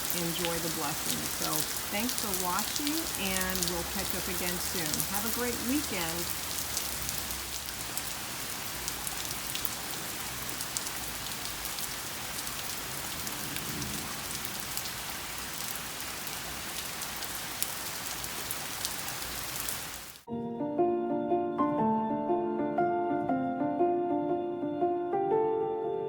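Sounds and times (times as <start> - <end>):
heavy rain falling: 0.0 - 20.3
piano music: 20.3 - 26.0.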